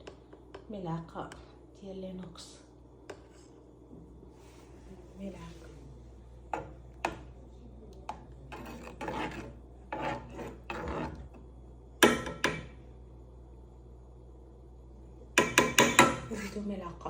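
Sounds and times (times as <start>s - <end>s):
spoon scraping honey: 8.1s - 11.4s.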